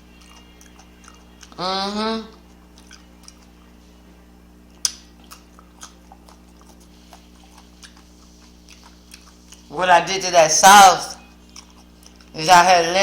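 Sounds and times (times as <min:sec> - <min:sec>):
person chewing food: 0:00.0 - 0:04.0, 0:04.7 - 0:09.8, 0:11.2 - 0:12.4
low hum: 0:00.0 - 0:13.0.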